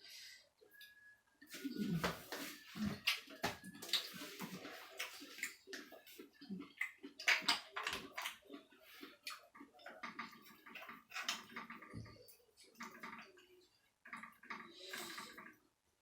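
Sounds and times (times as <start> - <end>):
person chewing food: 0.8 - 15.6
clicks from handling food: 6.6 - 11.9.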